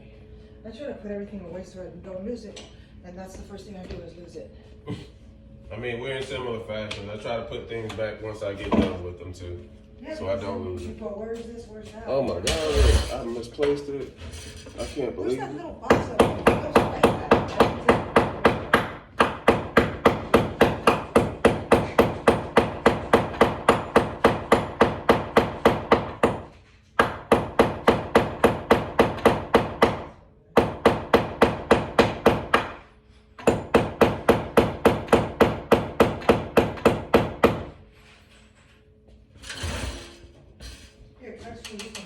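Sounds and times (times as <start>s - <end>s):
hammer striking nail: 15.9s - 37.8s.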